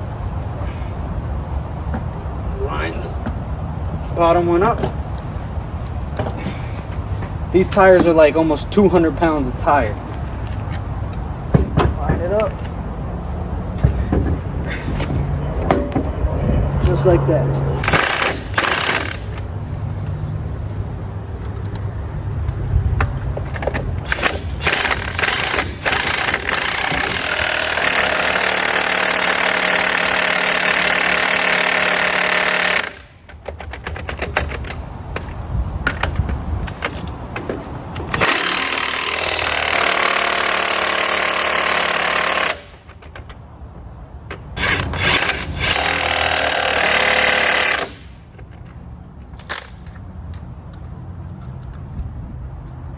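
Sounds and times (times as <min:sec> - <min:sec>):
impact wrench bursts: 0:17.8 - 0:19.5, 0:23.6 - 0:34.8, 0:38.0 - 0:43.3, 0:44.4 - 0:48.4.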